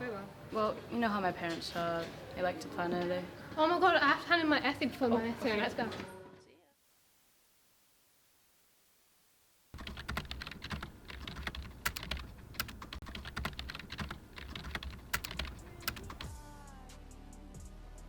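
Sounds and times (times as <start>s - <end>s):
music: 4.9s - 6.7s, 15.5s - 18.0s
fast keyboard typing: 9.8s - 16.3s.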